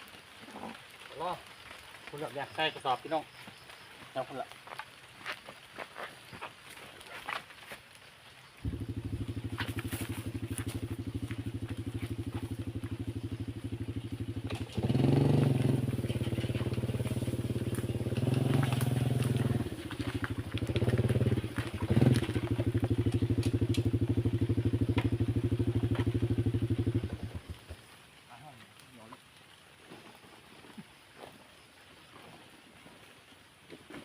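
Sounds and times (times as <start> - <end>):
small motorcycle engine running: 8.6 - 27.9.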